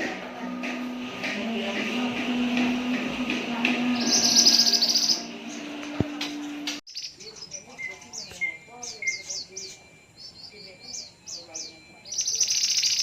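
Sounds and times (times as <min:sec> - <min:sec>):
steady low hum: 0:00.0 - 0:12.2
bird chirps and whistles: 0:04.0 - 0:05.3, 0:06.9 - 0:13.0
bird trilling: 0:04.0 - 0:05.8, 0:06.4 - 0:13.0.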